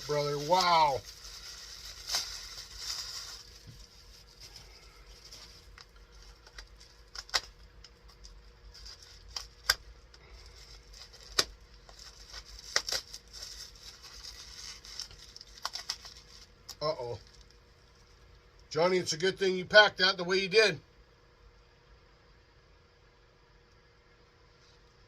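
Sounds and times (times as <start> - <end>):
packing material rustling: 0.0 - 18.2.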